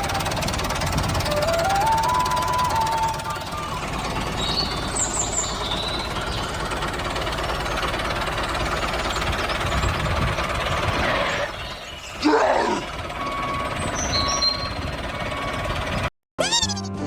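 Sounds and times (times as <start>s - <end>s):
small engine running: 0.0s - 16.8s.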